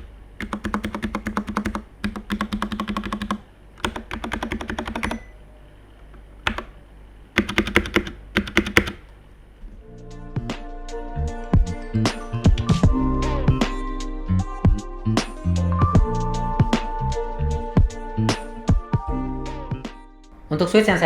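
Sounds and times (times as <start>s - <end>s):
fast typing on mechanical keyboard: 0.0s - 5.3s, 6.5s - 6.7s, 7.4s - 9.0s
background music: 9.8s - 21.0s.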